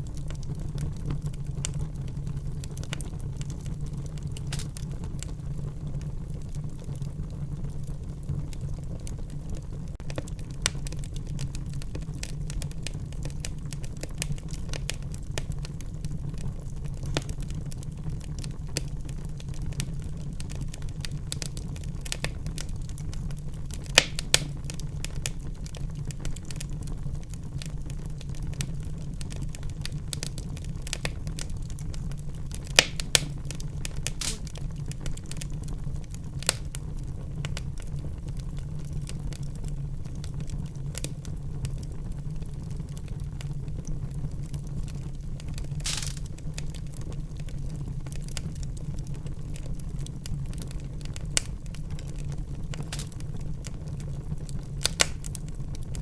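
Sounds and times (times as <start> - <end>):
low rumble of flames: 0.0 - 56.0
wood fire crackling: 0.0 - 56.0
sharp pops of fire: 4.2 - 5.4, 10.0 - 16.0, 16.9 - 26.9, 27.6 - 35.7, 36.3 - 37.8, 43.1 - 47.5, 50.2 - 56.0.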